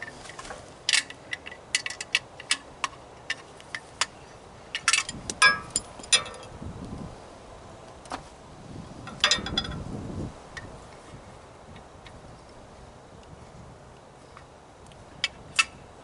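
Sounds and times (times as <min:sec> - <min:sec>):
metal tools clinking and clanking: 0:00.9 - 0:06.6, 0:09.1 - 0:09.8.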